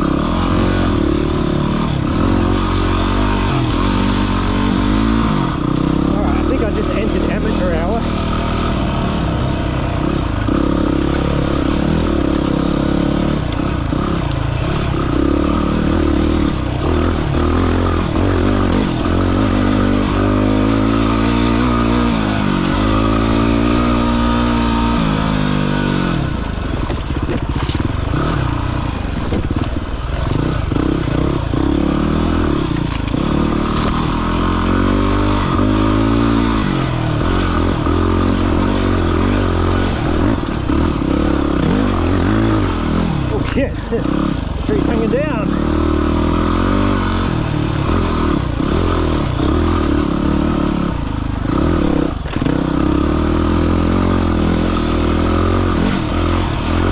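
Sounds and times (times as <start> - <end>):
dirt bike engine revving: 0.0 - 56.9.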